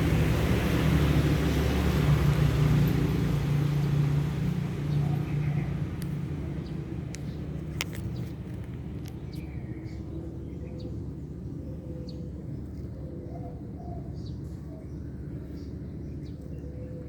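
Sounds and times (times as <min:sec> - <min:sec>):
vehicle engine passing: 0:00.0 - 0:08.3.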